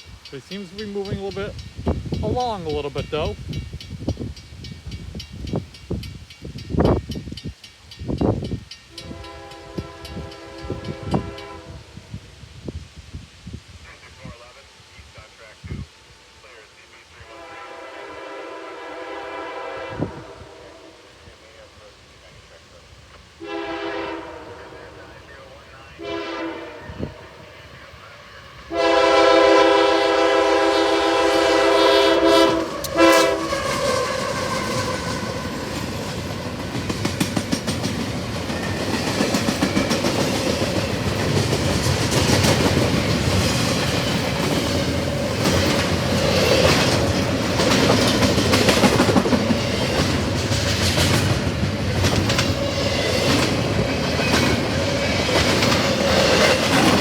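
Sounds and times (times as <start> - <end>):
wheels clacking over rail joints: 0.0 - 11.1, 32.5 - 57.0
train passing rumble: 0.0 - 13.0, 13.6 - 57.0
locomotive air horn: 9.0 - 12.1, 17.2 - 21.1, 23.4 - 25.0, 26.0 - 27.4, 28.7 - 35.4.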